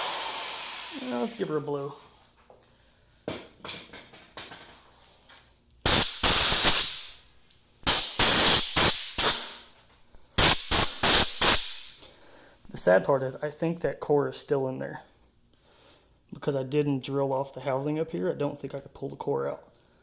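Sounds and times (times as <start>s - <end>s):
compressed air blasts hissing: 0.0s - 1.3s, 5.8s - 7.2s, 7.8s - 12.1s.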